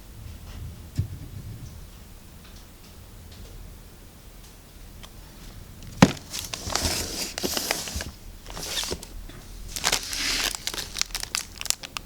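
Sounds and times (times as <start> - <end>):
cardboard rustling and scraping: 5.5 - 11.8.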